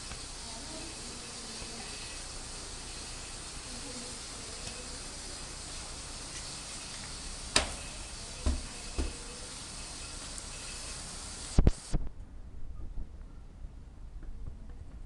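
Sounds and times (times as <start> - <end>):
gas burner hissing: 0.0 - 12.0
sharp knocks on metal: 8.4 - 9.2.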